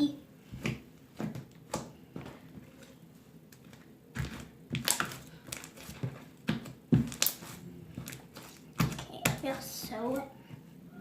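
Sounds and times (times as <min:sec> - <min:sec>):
sticky clicks and crackles: 0:03.6 - 0:06.3.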